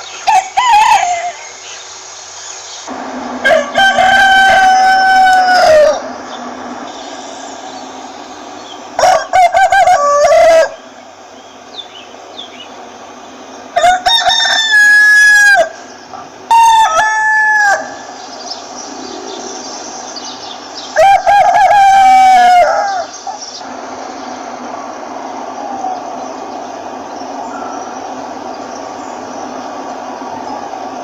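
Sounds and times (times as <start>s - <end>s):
rooster crowing: 0.2s - 1.5s, 3.4s - 6.2s, 9.0s - 10.9s, 13.7s - 15.9s, 16.5s - 18.3s, 20.9s - 23.4s.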